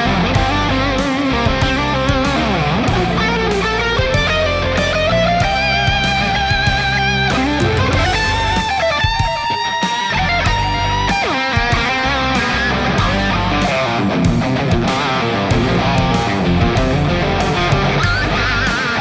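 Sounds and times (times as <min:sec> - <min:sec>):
low accompaniment: 0:00.0 - 0:09.3, 0:11.8 - 0:13.7, 0:15.5 - 0:18.7
electric guitar lead with delay: 0:00.0 - 0:19.0.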